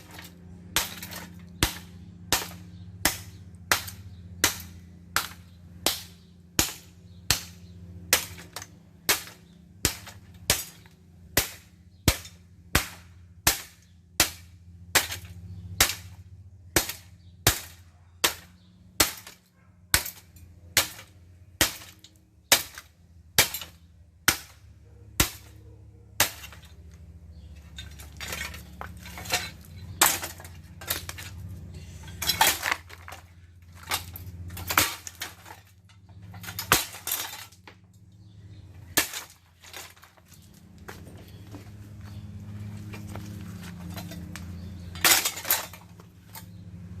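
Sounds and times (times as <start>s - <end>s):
low motor hum: 0.0s - 19.0s, 19.7s - 47.0s
clattering and clinking parts: 26.2s - 38.0s, 38.8s - 46.6s.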